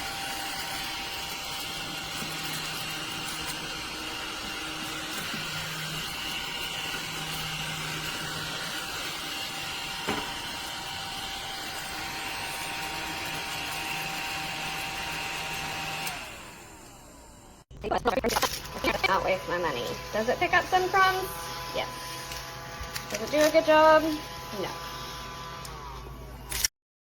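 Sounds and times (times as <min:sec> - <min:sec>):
vacuum cleaner motor whirring: 0:00.0 - 0:17.6, 0:18.4 - 0:26.5.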